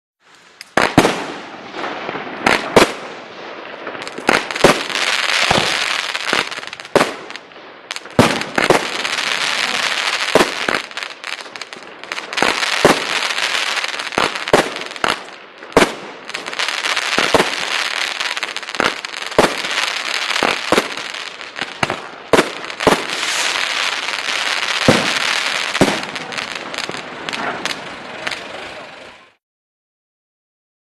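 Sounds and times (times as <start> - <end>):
firework crackling: 0.2 - 29.4
firework bangs: 0.5 - 29.4.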